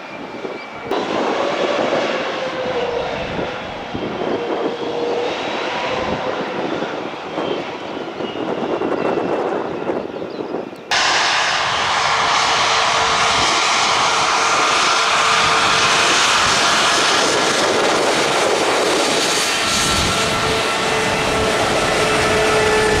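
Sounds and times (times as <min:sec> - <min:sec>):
jet engines roaring: 0:00.0 - 0:23.0.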